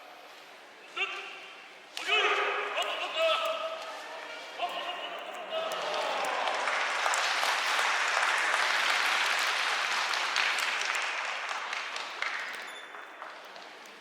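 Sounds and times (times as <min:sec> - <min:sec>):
crowd applauding: 0:05.6 - 0:14.0.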